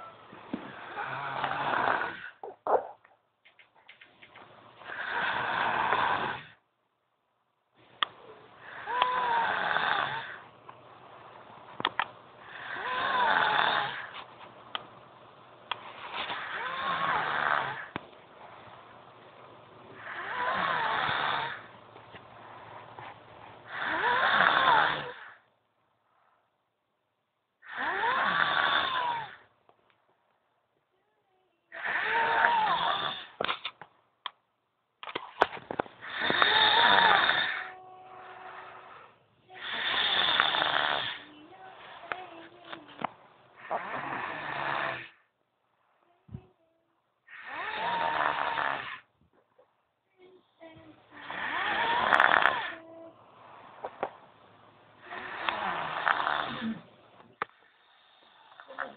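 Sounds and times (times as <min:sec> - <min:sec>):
girl snoring loudly: 0:00.0 - 0:02.4, 0:04.8 - 0:06.6, 0:08.6 - 0:10.4, 0:12.4 - 0:14.1, 0:16.3 - 0:18.0, 0:20.0 - 0:21.7, 0:23.7 - 0:25.5, 0:27.6 - 0:29.4, 0:31.7 - 0:33.4, 0:36.0 - 0:42.4, 0:43.6 - 0:45.3, 0:47.3 - 0:49.1, 0:50.6 - 0:53.2, 0:55.0 - 0:56.9.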